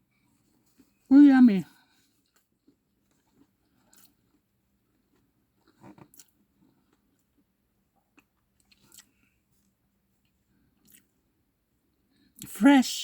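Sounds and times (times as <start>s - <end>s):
person chewing food: 1.9s - 11.3s.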